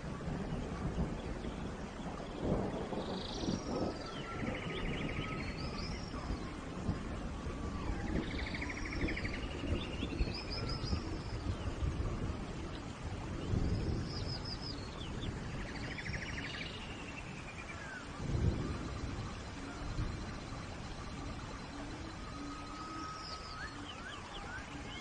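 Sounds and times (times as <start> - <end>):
low background noise: 0.0 - 25.0
chirp and buzzy trill birdsong: 0.5 - 6.6, 7.7 - 11.8
wavering bird whistles: 22.2 - 25.0.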